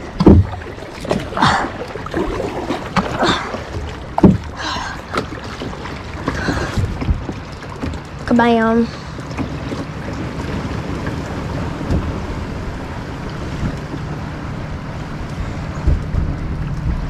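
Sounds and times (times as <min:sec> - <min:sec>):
paddle knocking: 0:00.0 - 0:12.3
paddle strokes splashing water: 0:00.0 - 0:14.5.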